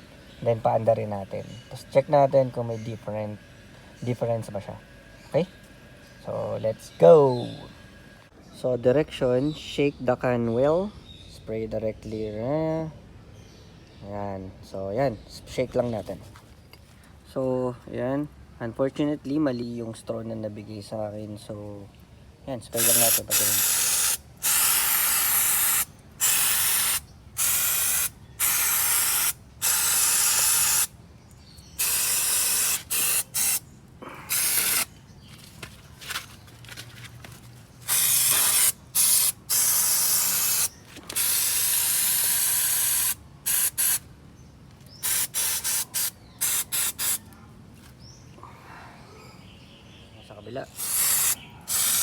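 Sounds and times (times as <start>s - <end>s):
aerosol spray hissing: 22.8s - 30.9s, 31.8s - 33.6s, 34.3s - 34.9s, 37.9s - 44.0s, 44.9s - 47.2s, 50.7s - 52.0s.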